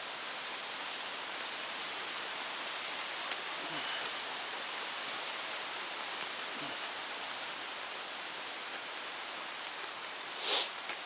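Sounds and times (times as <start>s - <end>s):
stormy weather rushing hiss: 10.3s - 10.8s.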